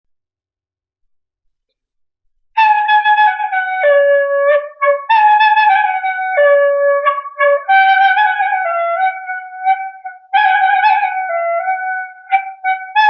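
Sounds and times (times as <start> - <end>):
wind instrument solo melody: 2.6 - 13.0.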